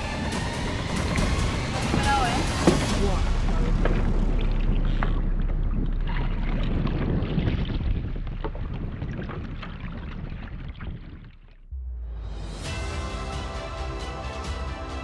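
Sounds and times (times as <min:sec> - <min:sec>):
wind buffeting microphone: 0:00.0 - 0:11.5
water sloshing against kayak: 0:00.0 - 0:11.6.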